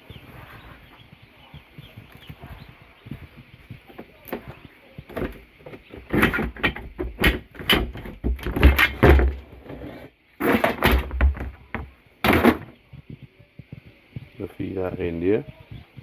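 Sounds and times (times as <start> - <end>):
heavy dull thumps: 0.7 - 9.8
knocks and rattles of handling: 3.0 - 13.8.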